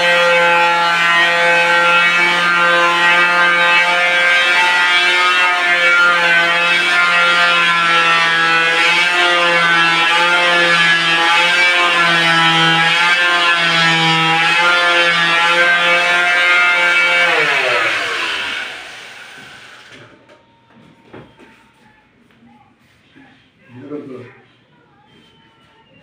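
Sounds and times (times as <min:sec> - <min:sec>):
electric motor whining: 0:00.0 - 0:20.0.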